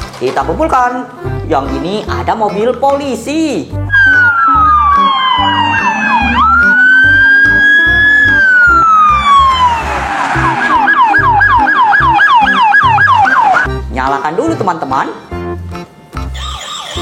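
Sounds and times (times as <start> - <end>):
background music with beat: 3.8 - 13.9
toy police siren wailing: 3.9 - 13.7, 16.4 - 17.0.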